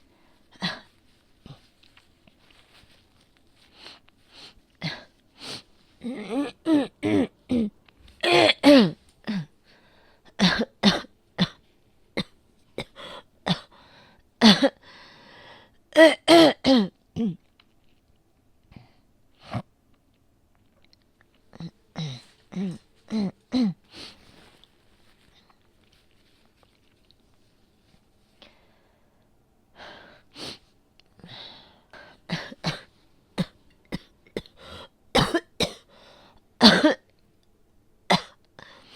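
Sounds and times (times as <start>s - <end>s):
woman coughing: 6.1s - 9.4s, 10.4s - 11.6s, 14.4s - 14.8s, 32.3s - 34.6s, 35.2s - 35.9s, 36.6s - 37.1s, 38.1s - 38.4s
faint breaths: 9.6s - 10.3s, 13.0s - 15.8s, 28.2s - 32.3s, 35.9s - 36.5s.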